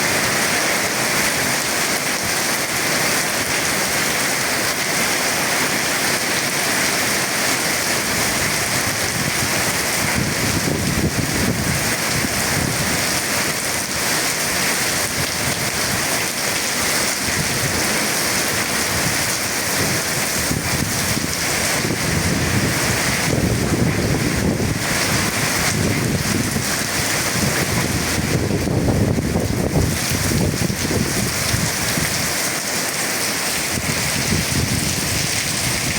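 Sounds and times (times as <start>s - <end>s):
heavy rain falling: 0.0s - 35.9s
thunder rumbling: 16.8s - 32.3s.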